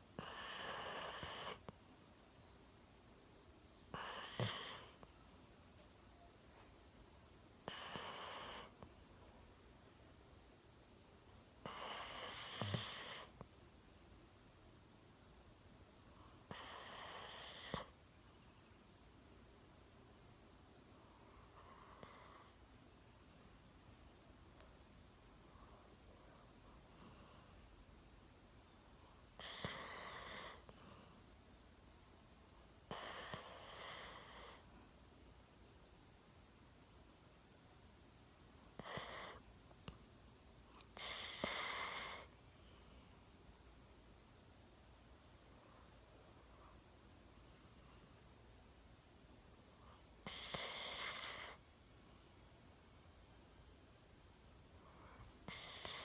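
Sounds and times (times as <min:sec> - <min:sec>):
faint dog breath: 0:00.1 - 0:02.4, 0:03.9 - 0:05.9, 0:07.6 - 0:09.4, 0:11.6 - 0:14.4, 0:28.9 - 0:31.6, 0:32.6 - 0:34.9, 0:38.6 - 0:43.5, 0:54.6 - 0:56.0
dog snoring: 0:00.2 - 0:01.7, 0:03.9 - 0:05.1, 0:07.6 - 0:08.9, 0:11.6 - 0:13.4, 0:16.4 - 0:18.0, 0:21.4 - 0:22.6, 0:29.4 - 0:31.2, 0:32.8 - 0:34.6, 0:38.7 - 0:39.4, 0:40.7 - 0:43.0, 0:50.2 - 0:51.6, 0:55.0 - 0:56.0.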